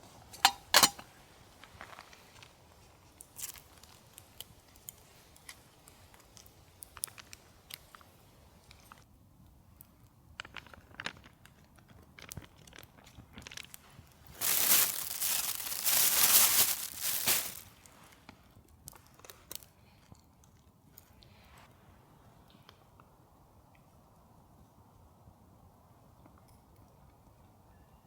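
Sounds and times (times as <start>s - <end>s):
crinkling and rustling: 0.0s - 9.0s, 10.4s - 20.1s
light clicks and crackles: 0.3s - 21.7s.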